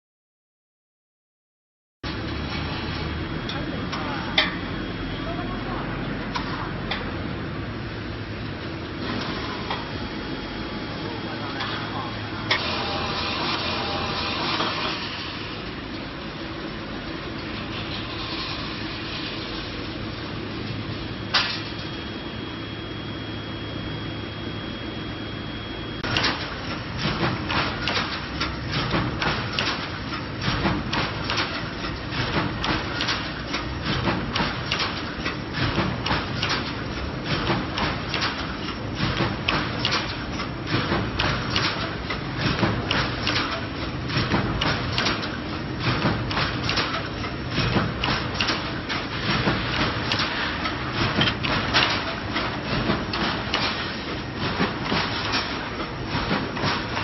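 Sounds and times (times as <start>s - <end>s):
continuous mechanical noise: 2.0s - 57.0s
machine hum with high whine: 2.0s - 57.0s
welding machine sharp knocks: 26.0s - 57.0s.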